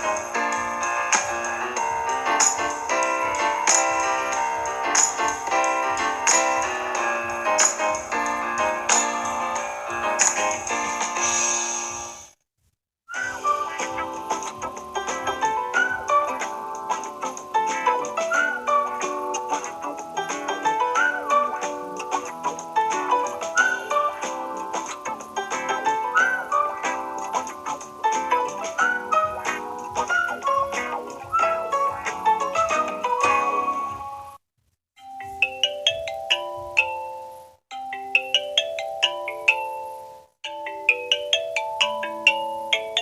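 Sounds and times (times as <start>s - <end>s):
phone ringtone melody: 35.0s - 43.0s.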